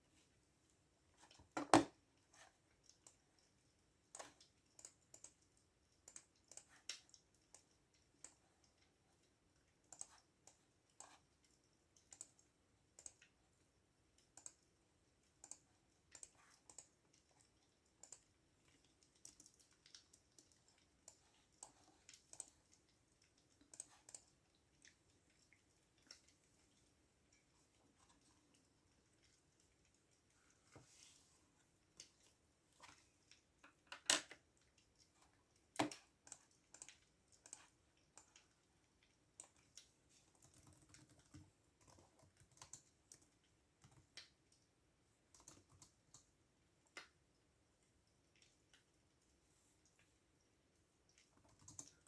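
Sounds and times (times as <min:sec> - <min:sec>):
keyboard typing: 0:40.3 - 0:44.1, 0:45.3 - 0:46.2, 0:51.5 - 0:52.0.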